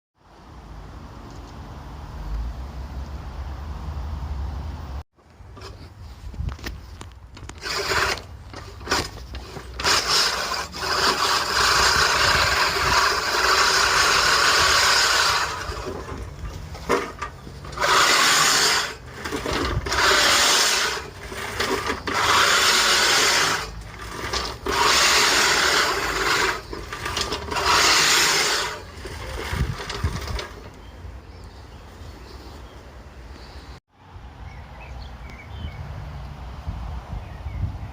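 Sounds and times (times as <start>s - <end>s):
reel mower blades whirring: 5.3s - 31.1s.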